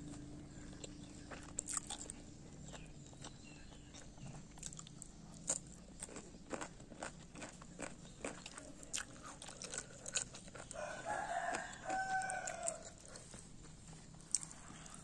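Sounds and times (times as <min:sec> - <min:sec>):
person chewing crunchy food: 0:00.0 - 0:15.0.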